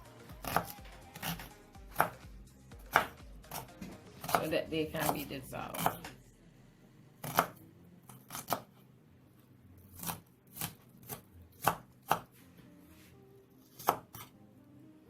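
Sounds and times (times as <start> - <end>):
knife chopping on cutting board: 0.4 - 6.2, 7.2 - 8.7, 10.0 - 12.3, 13.8 - 14.3.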